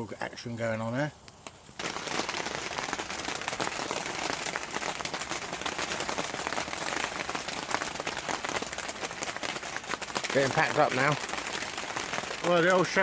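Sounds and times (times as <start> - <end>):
heavy rain falling: 1.8 - 13.0.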